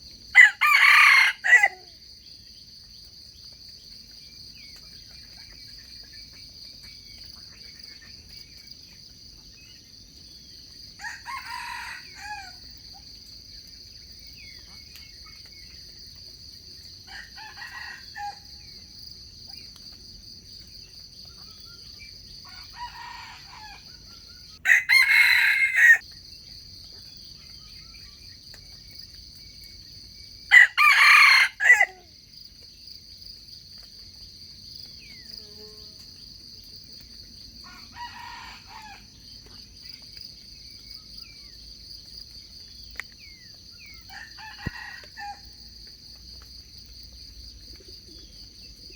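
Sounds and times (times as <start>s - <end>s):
roosters crowing: 0.4s - 1.9s, 11.0s - 12.6s, 17.1s - 18.6s, 22.4s - 26.0s, 30.5s - 32.0s, 37.6s - 39.1s, 44.1s - 45.7s
high insect drone: 15.5s - 48.9s.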